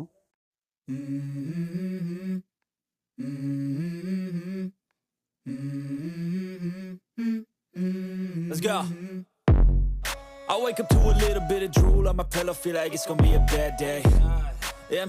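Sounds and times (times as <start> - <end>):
person humming a melody: 0.9 - 2.5, 3.2 - 4.8, 5.4 - 9.3, 13.1 - 15.0.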